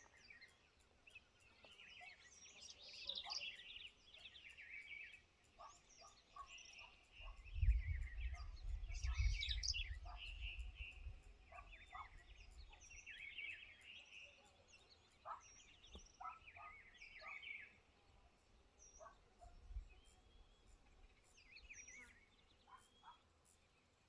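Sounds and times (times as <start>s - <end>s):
birds chirping and trilling: 0.0s - 24.0s
wind rumble on microphone: 7.2s - 12.8s, 19.4s - 20.2s.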